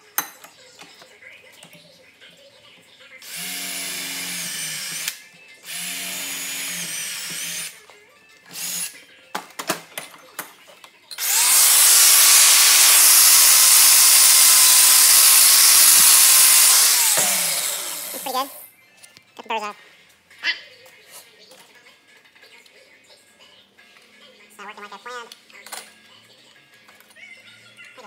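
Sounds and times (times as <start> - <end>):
electric drill whining: 3.2 - 7.8, 8.5 - 8.9, 11.2 - 18.6.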